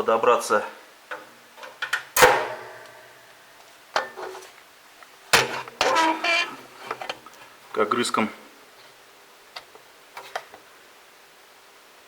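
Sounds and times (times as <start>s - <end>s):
metal clanking: 5.4s - 6.6s.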